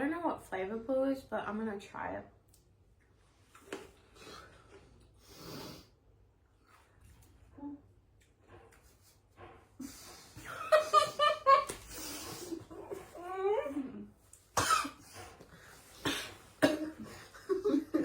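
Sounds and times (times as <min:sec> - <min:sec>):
girls laughing: 0:10.4 - 0:11.9, 0:17.0 - 0:18.0
girls coughing: 0:14.6 - 0:15.0, 0:16.0 - 0:17.4.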